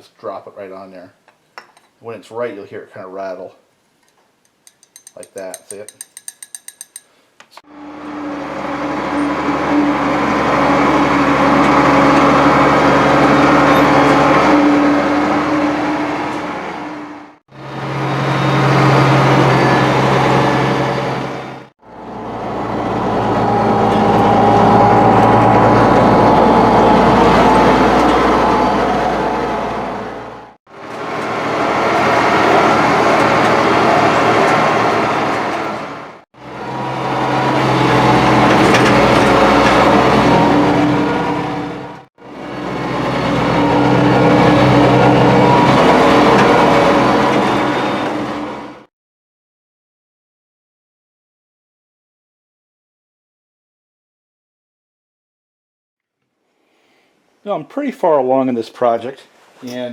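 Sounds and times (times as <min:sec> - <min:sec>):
engine running: 0:07.7 - 0:48.9.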